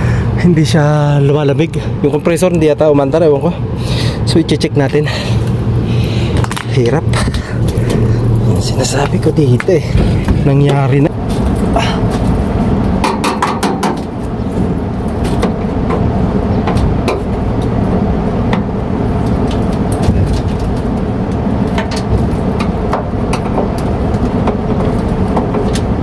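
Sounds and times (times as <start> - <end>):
air conditioner units rumbling: 0.0 - 26.0
sharp clicks and knocks: 9.0 - 14.3, 15.1 - 17.8, 18.5 - 26.0.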